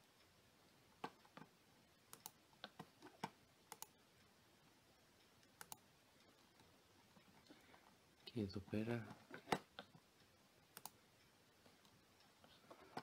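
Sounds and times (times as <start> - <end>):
keyboard and mouse clicks: 1.0 - 4.0, 5.4 - 6.7, 9.0 - 10.0, 10.7 - 11.0.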